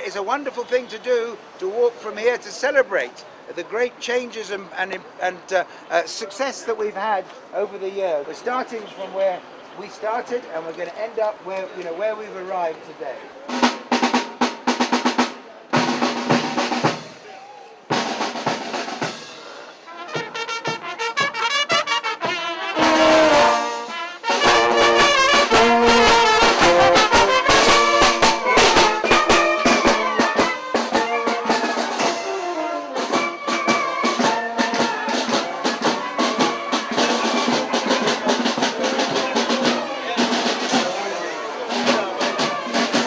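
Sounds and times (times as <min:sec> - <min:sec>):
brass band playing: 0:13.4 - 0:17.3, 0:17.9 - 0:43.0
marching drum beat: 0:13.5 - 0:43.0.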